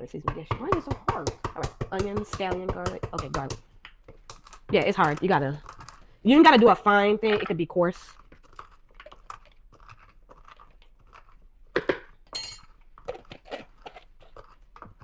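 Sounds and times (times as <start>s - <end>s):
berries crunching and cracking: 3.9s - 15.0s.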